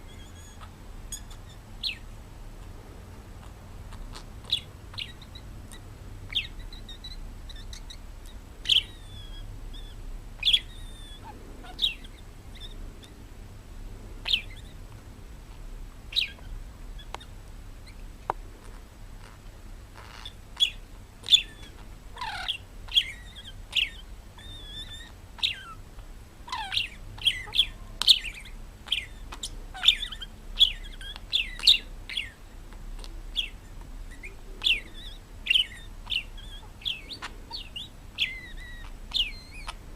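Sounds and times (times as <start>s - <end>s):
bird chirping: 0.0s - 2.2s, 3.1s - 13.2s, 14.2s - 14.8s, 15.5s - 39.9s.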